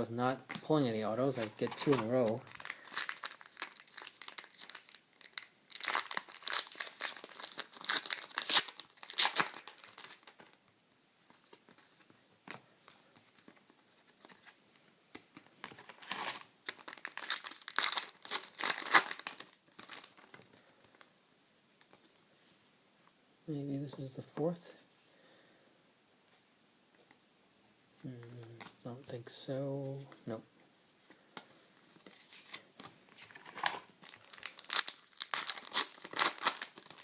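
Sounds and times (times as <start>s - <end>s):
wrapper crinkling and tearing: 1.3s - 10.6s, 15.7s - 20.5s, 32.1s - 37.0s.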